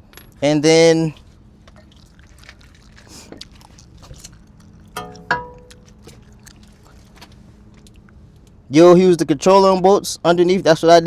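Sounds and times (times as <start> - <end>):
low steady hum: 0.0 - 10.6.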